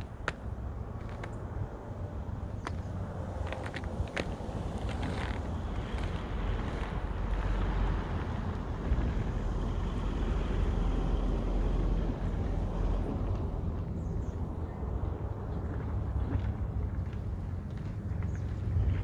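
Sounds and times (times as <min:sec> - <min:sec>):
roller skate wheels rolling: 0:00.0 - 0:01.4, 0:02.2 - 0:07.7.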